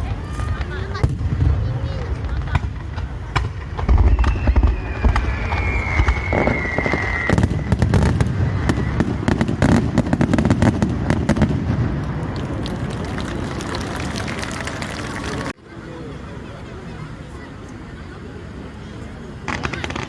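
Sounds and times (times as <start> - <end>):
deep firework booms: 0.0 - 14.0
fireworks crackling and popping: 0.0 - 15.6, 19.0 - 20.0
high falling whistle: 4.0 - 9.0.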